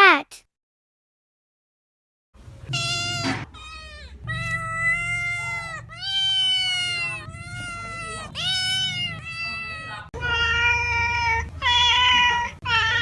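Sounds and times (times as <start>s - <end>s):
cat meowing: 2.7s - 13.0s.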